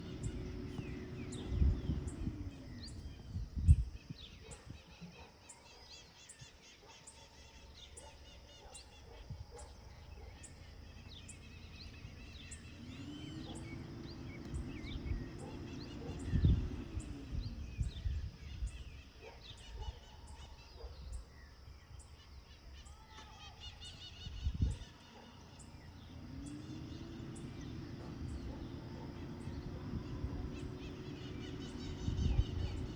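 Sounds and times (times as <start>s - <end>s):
low hum: 0.0s - 3.9s
birds chirping: 0.0s - 32.9s.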